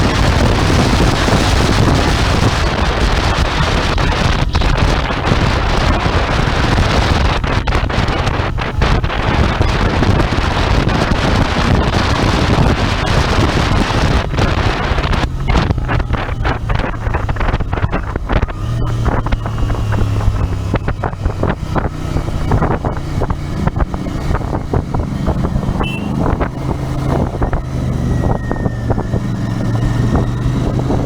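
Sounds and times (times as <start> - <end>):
motorcycle engine running: 0.0 - 31.0
wind buffeting microphone: 0.0 - 31.0.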